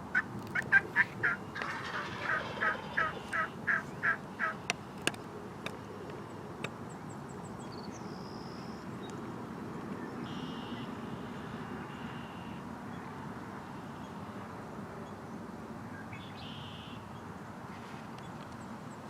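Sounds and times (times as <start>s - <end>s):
turkey yelps: 0.2s - 4.6s.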